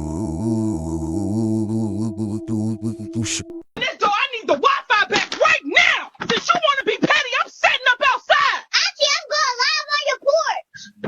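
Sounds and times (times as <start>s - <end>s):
low droning chant-like sound: 0.0s - 3.6s.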